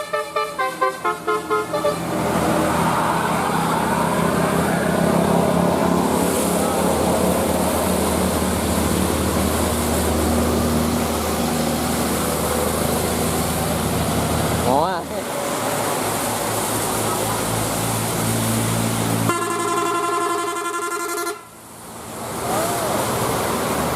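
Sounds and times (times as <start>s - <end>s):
musical horn tune: 0.0s - 2.1s, 19.3s - 21.5s
road noise: 0.0s - 23.9s.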